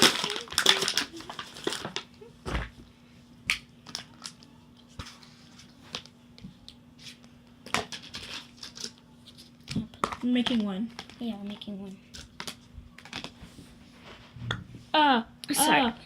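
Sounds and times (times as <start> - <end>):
containers clicking and knocking: 0.0 - 2.0.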